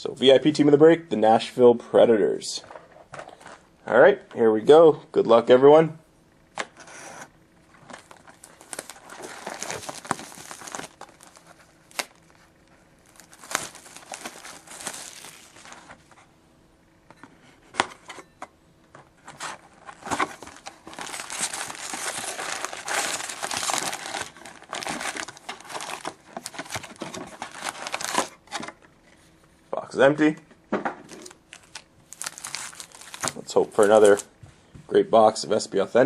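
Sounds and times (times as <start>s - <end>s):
plastic wrapping crinkling: 7.8s - 16.2s, 19.5s - 28.7s, 31.1s - 34.3s.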